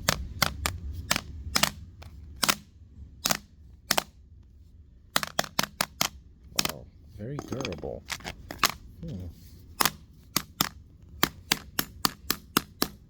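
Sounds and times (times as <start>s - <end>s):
hammer striking tablet: 0.0s - 4.1s, 9.8s - 13.0s.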